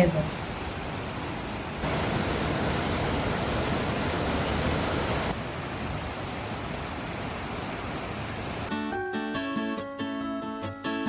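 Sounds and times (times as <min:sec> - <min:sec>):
river rushing: 0:00.5 - 0:08.7.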